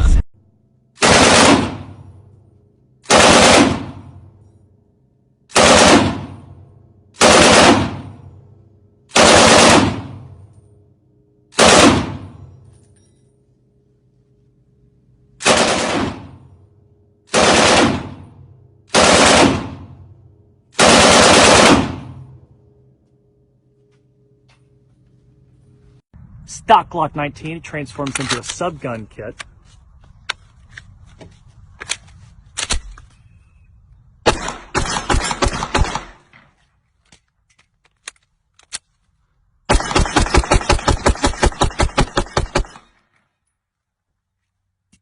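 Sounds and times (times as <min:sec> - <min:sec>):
automatic gunfire bursts: 0:01.0 - 0:01.9, 0:03.1 - 0:04.1, 0:05.5 - 0:06.4, 0:07.2 - 0:08.1, 0:09.1 - 0:10.2, 0:11.6 - 0:12.2, 0:15.4 - 0:16.4, 0:17.3 - 0:18.2, 0:18.9 - 0:19.9, 0:20.8 - 0:22.2, 0:34.3 - 0:36.2, 0:39.7 - 0:42.9
gunshot echo: 0:34.2 - 0:36.5.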